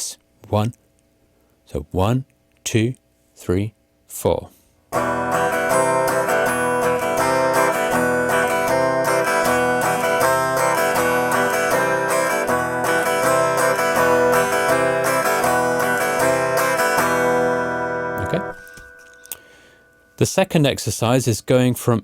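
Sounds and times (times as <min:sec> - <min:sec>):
guitar strummed quickly: 0:05.0 - 0:20.0.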